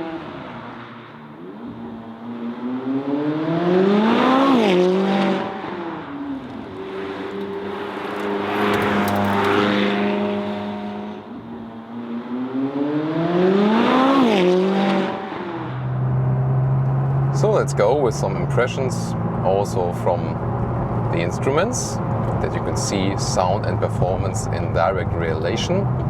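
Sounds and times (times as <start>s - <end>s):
car engine revving hard: 1.4s - 11.3s, 12.0s - 16.6s.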